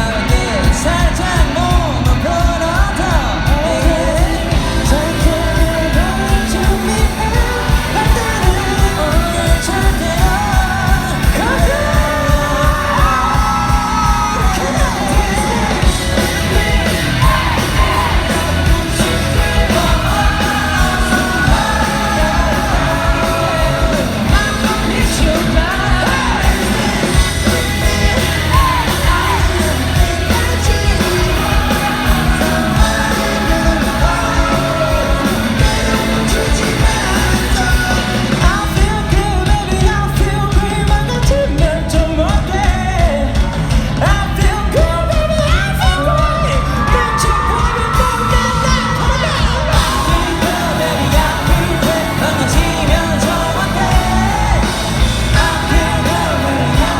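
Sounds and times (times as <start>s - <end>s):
crowd yelling and cheering: 0.0s - 56.9s
live rock band playing: 0.0s - 56.9s
person singing: 0.0s - 56.9s.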